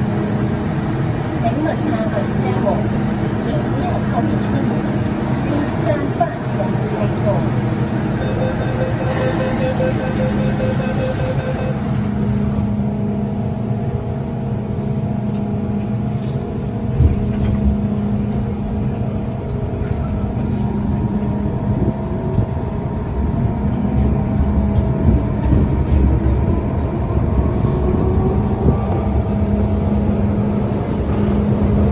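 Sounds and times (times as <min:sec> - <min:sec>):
train rumble and hum: 0:00.0 - 0:31.9
traction motor whine: 0:08.1 - 0:12.2.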